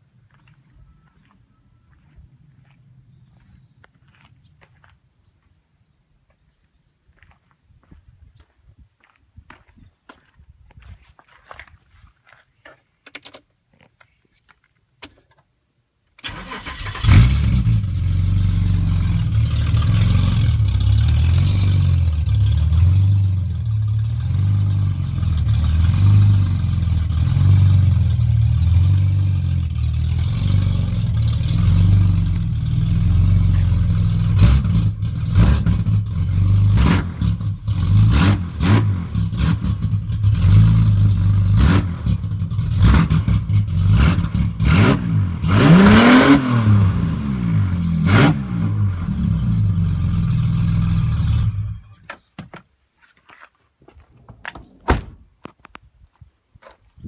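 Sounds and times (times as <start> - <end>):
car engine starting and running: 16.2 - 52.2.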